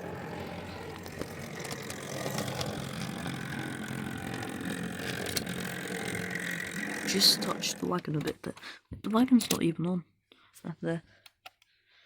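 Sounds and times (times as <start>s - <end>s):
model train motor whirring: 0.0s - 8.4s
wheels clicking on rails: 0.0s - 8.6s.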